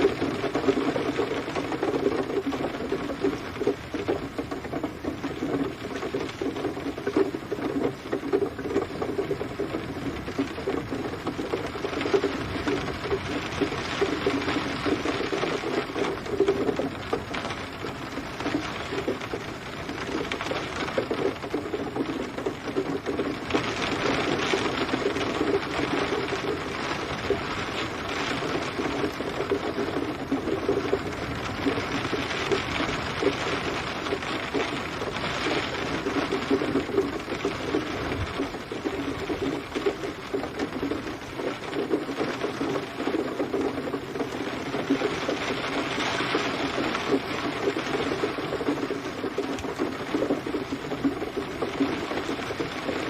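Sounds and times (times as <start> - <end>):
rain pattering: 0.0 - 53.0.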